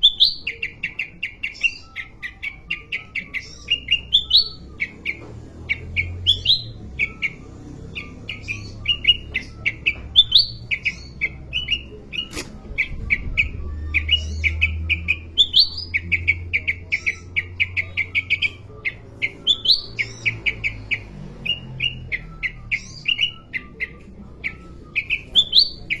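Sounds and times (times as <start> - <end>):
bird chirping song: 0.0 - 26.0
sharp click: 12.2 - 12.6.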